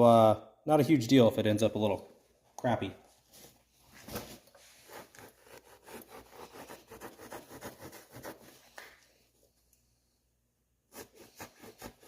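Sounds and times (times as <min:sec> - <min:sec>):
bread knife sawing through foam: 0:04.7 - 0:08.7, 0:10.9 - 0:12.0.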